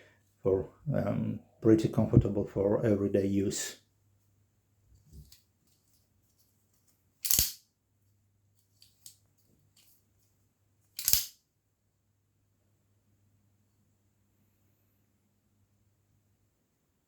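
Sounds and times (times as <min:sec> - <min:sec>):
folding knife blade clacking: 0:11.0 - 0:11.4.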